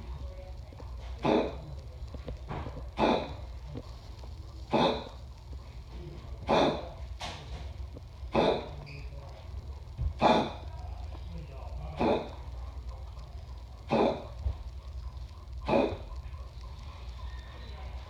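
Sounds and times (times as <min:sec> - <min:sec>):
dog coughing: 0:01.2 - 0:01.7, 0:02.9 - 0:03.5, 0:04.7 - 0:05.2, 0:06.4 - 0:07.0, 0:08.3 - 0:08.8, 0:10.2 - 0:10.6, 0:12.0 - 0:12.4, 0:13.9 - 0:14.4, 0:15.6 - 0:16.1.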